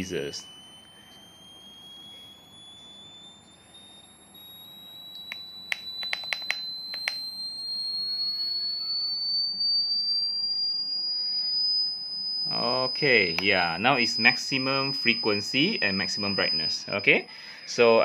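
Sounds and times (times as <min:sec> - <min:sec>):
buzzer tone rising in pitch: 0:00.0 - 0:17.2
sharp clicks: 0:05.3 - 0:07.3.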